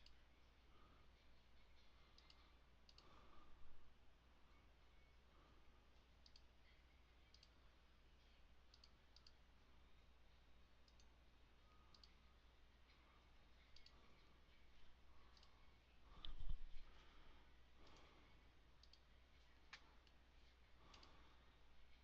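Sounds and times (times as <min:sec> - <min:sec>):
faint mouse clicks: 0:00.0 - 0:00.2, 0:01.6 - 0:03.2, 0:05.9 - 0:07.6, 0:08.6 - 0:09.4, 0:10.8 - 0:12.2, 0:13.6 - 0:14.3, 0:15.2 - 0:17.1, 0:17.8 - 0:18.1, 0:18.8 - 0:21.2
low steady hum: 0:00.0 - 0:22.0.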